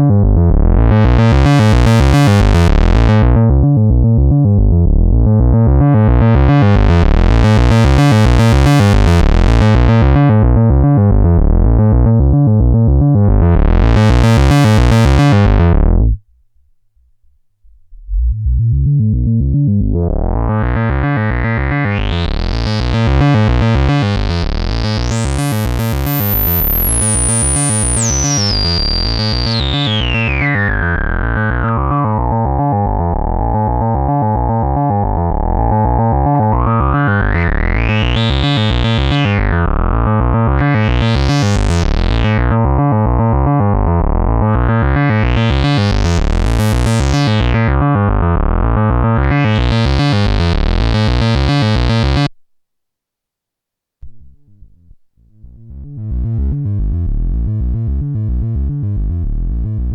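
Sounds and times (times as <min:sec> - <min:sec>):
synthesizer fast repeating notes: 0:00.6 - 0:03.4, 0:19.2 - 0:52.3.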